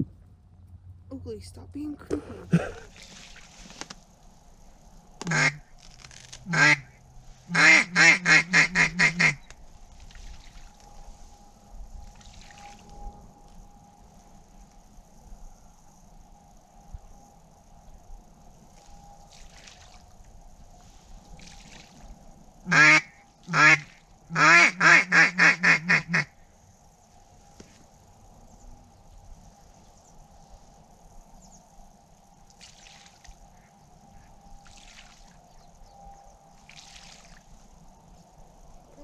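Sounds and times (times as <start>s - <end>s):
duck call quacks: 5.3s - 5.6s, 6.5s - 6.8s, 7.5s - 9.4s, 22.7s - 23.8s, 24.4s - 26.3s.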